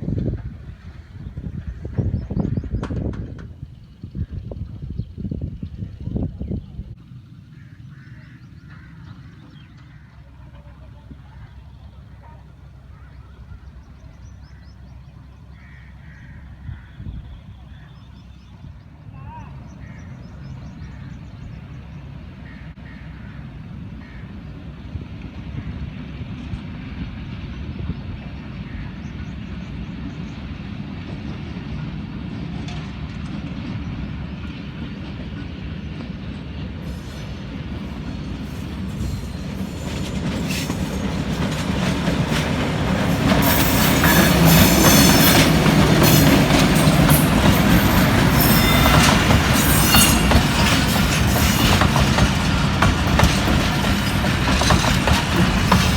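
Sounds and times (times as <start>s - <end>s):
diesel train passing: 0.0s - 55.9s
train wheels clattering and squealing: 0.1s - 3.8s, 30.1s - 55.9s.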